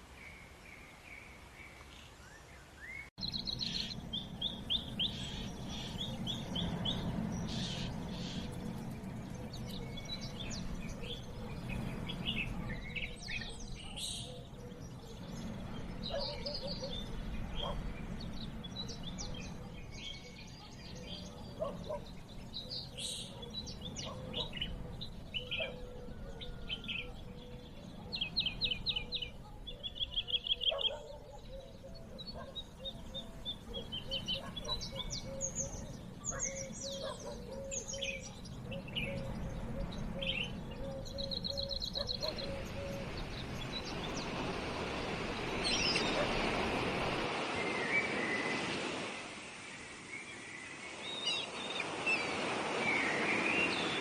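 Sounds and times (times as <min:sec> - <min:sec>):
birds chirping: 0:00.0 - 0:54.0
rushing noise: 0:42.3 - 0:54.0.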